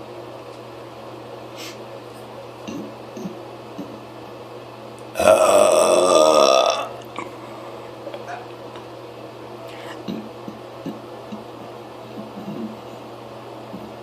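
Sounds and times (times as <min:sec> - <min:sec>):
person burping loudly: 0:05.2 - 0:07.3.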